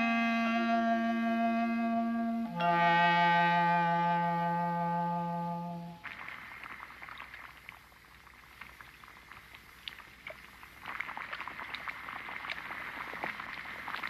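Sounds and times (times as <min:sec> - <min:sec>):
soft crackling with clicks: 0:06.0 - 0:14.0.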